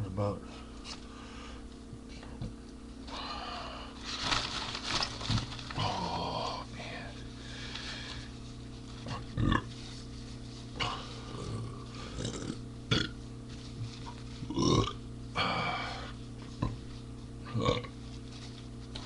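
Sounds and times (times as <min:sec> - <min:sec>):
man burping: 0:10.8 - 0:13.2, 0:14.5 - 0:16.0, 0:17.5 - 0:17.9.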